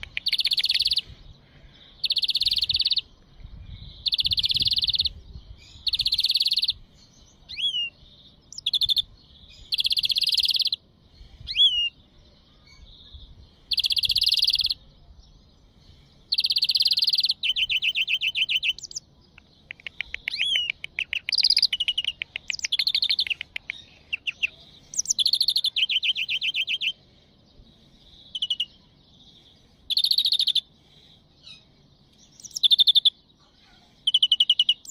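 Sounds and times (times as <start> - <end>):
finch singing buzzy wheezes and trills: 15.6 - 34.9.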